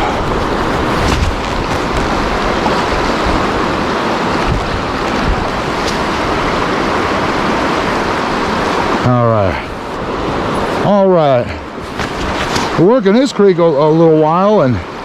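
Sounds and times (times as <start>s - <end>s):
creek water rushing over rocks: 0.0s - 15.0s.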